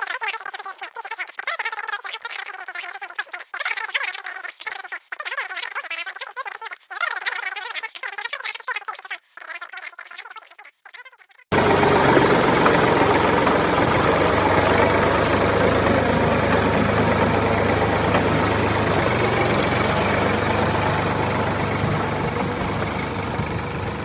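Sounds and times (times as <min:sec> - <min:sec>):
small engine idling: 0:11.5 - 0:24.0.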